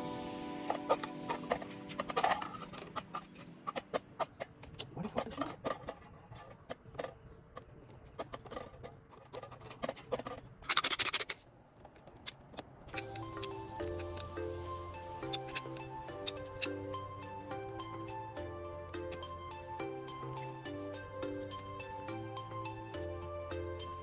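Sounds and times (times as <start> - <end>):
tools clicking and scraping: 0.5 - 14.3, 15.0 - 18.2, 19.0 - 19.4.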